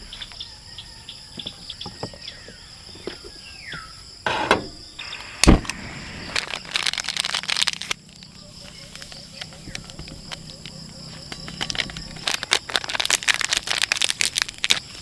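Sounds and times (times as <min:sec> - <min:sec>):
high-pitched insect chorus: 0:00.0 - 0:15.0
heavy thumps: 0:04.3 - 0:06.4.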